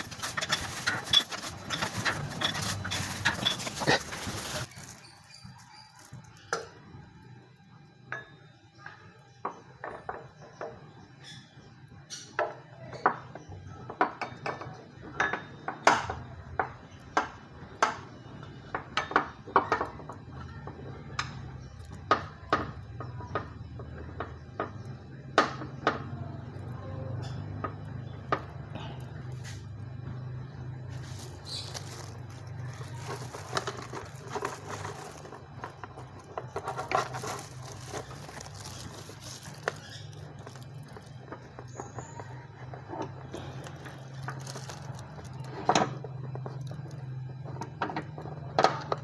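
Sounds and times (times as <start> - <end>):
metal tools clinking: 0.0 - 6.4, 30.9 - 41.7.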